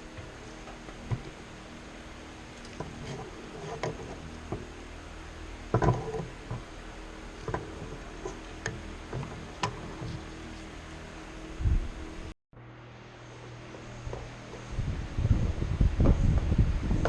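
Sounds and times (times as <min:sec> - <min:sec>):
low hum: 0:00.0 - 0:17.0.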